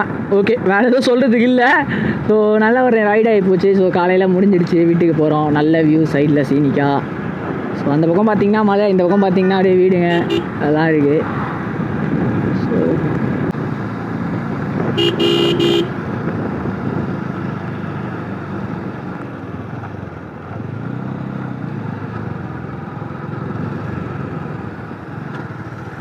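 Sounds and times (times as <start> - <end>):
motorcycle engine and road noise: 0.0 - 26.0
vehicle horn honking: 10.1 - 10.6, 15.0 - 16.0.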